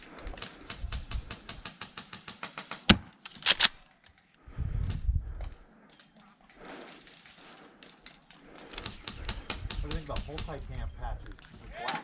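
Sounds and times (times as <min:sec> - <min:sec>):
airsoft gun full-auto clicks: 0:00.4 - 0:03.9, 0:08.6 - 0:10.1.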